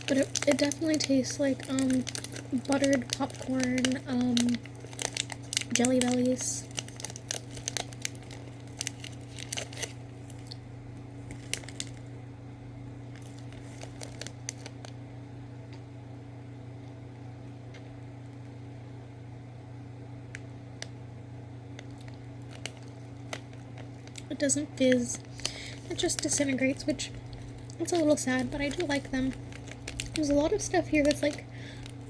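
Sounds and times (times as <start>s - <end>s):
candy wrapper crinkles and clicks: 0.0s - 12.1s, 13.0s - 15.0s, 21.8s - 32.0s
steady low hum: 0.0s - 32.0s.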